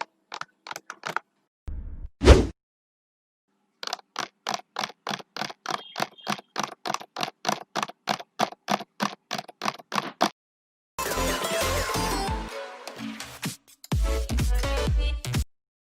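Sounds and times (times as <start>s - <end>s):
horse hoofbeats: 4.5s - 10.0s.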